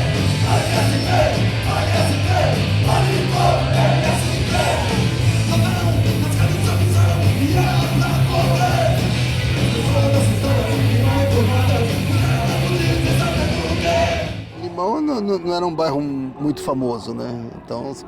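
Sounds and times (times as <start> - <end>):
driving bass: 0.0 - 14.4
shouted vocal: 0.0 - 14.4
distorted guitars: 0.0 - 14.7.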